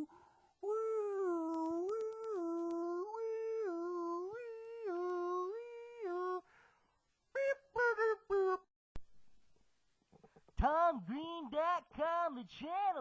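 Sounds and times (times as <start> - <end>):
person humming a bouncy tune: 0.0 - 6.4, 7.4 - 8.7.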